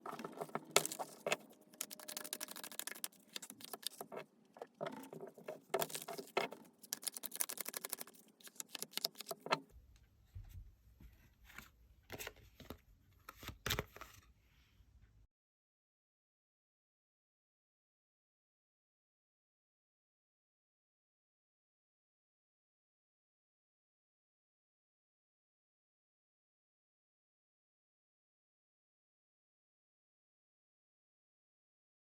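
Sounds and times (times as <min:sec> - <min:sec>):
cards being shuffled: 0:00.1 - 0:04.3, 0:04.9 - 0:09.6.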